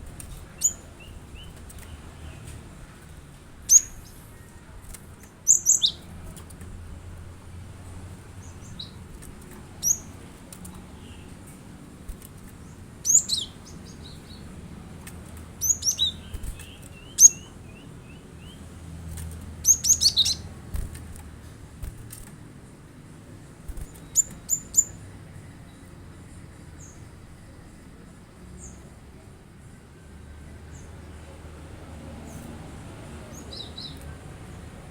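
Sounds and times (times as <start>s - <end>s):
bird chirping: 0.0s - 6.7s, 7.6s - 21.0s, 23.7s - 25.9s, 33.2s - 34.2s.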